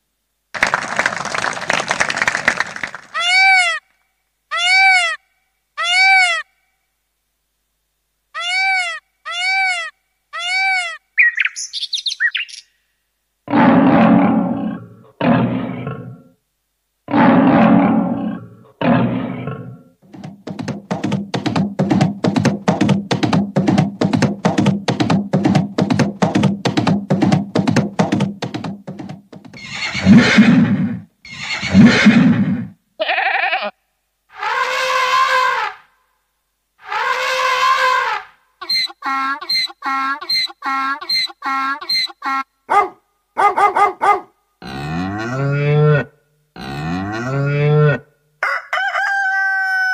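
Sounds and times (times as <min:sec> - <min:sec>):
keyboard animal-like cries: 0:04.5 - 0:05.2, 0:05.8 - 0:06.4, 0:08.4 - 0:11.0, 0:33.0 - 0:33.8, 0:36.8 - 0:45.4
fast repeated strokes: 0:20.1 - 0:30.2
keyboard chirps and trill: 0:38.6 - 0:42.4.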